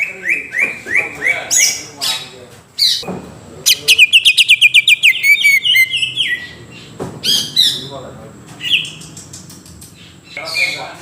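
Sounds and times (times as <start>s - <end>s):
bird singing whistled notes: 3.7s - 7.8s.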